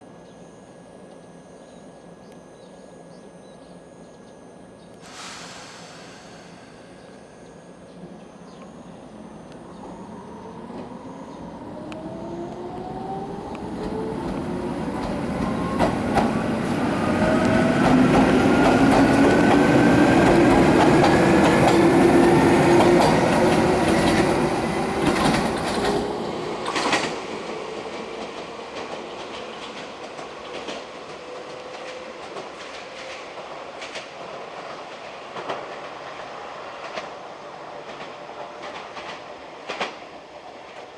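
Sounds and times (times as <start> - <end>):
electric train motor whine: 0.2 - 27.9.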